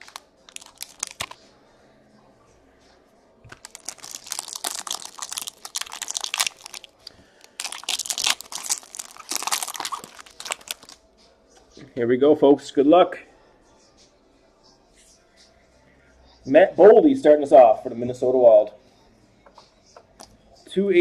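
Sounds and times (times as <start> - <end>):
card packaging tearing and crinkling: 0.0 - 1.4, 3.5 - 11.0.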